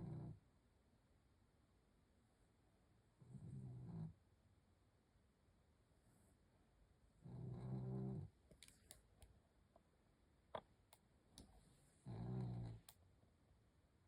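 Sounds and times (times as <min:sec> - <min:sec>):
person snoring: 0:12.0 - 0:12.9.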